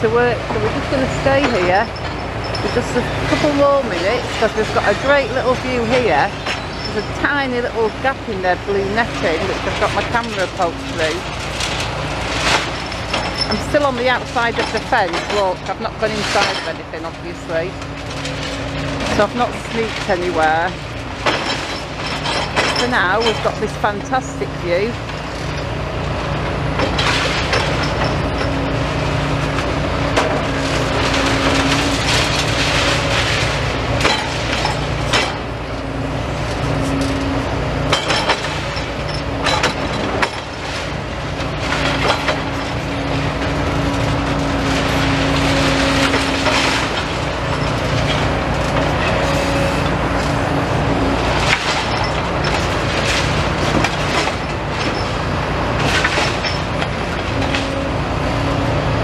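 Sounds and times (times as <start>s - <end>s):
excavator engine with hydraulic whine: 0.0s - 59.0s
material crunching and crashing: 9.5s - 15.3s, 26.8s - 35.6s, 37.9s - 49.3s, 49.9s - 57.8s.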